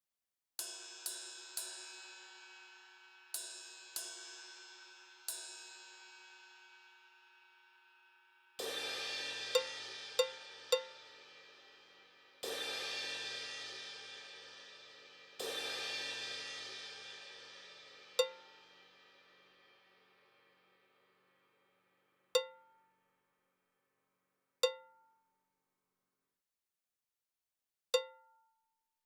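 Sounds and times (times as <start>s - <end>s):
synthesized cymbal hits: 8.6s - 19.0s.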